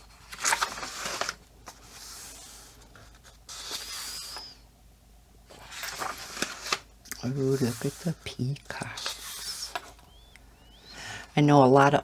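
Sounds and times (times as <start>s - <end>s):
paper pages turning: 0.0s - 4.6s, 5.5s - 10.0s.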